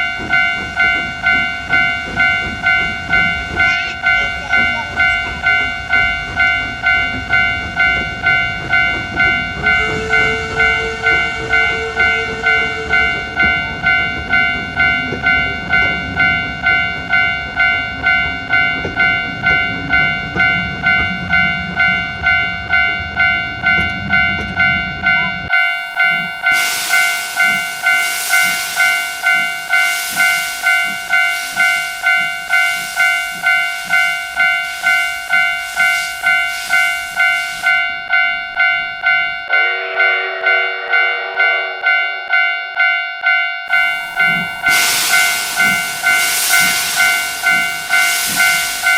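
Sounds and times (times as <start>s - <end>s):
passing train rumble: 0.0s - 48.9s
railway crossing alarm dinging: 0.0s - 48.9s
steam-like hiss: 26.0s - 37.8s, 43.7s - 48.9s.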